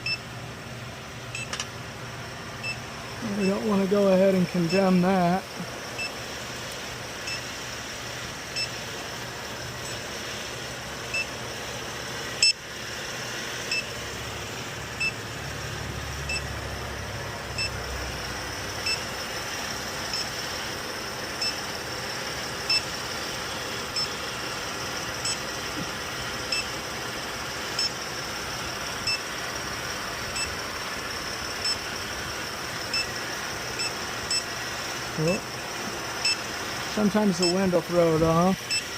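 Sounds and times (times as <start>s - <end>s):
leak detector beeping: 0.0s - 0.3s, 1.3s - 1.7s, 2.6s - 9.0s, 9.7s - 10.2s, 11.0s - 11.4s, 12.3s - 12.7s, 13.6s - 14.0s, 14.9s - 15.3s, 16.2s - 16.6s, 17.5s - 38.9s
steady hiss: 0.0s - 38.9s
sharp click: 1.4s - 1.7s.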